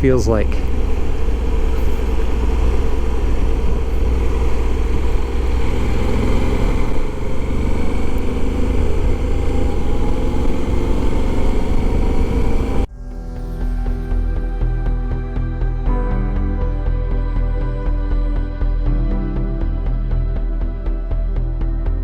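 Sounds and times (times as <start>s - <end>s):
motorcycle engine running: 0.0s - 12.9s
wind rumble on microphone: 0.0s - 12.9s.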